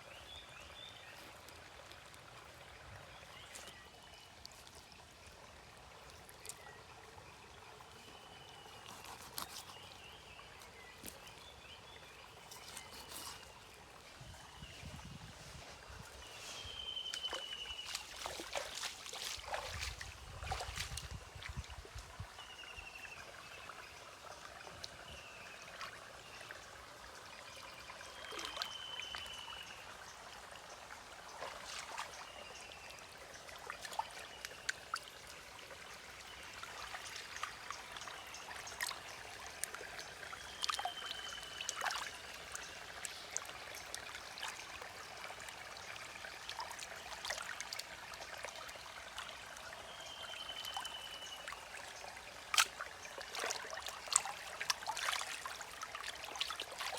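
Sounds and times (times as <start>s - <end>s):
water trickling and splashing: 0.0s - 56.9s.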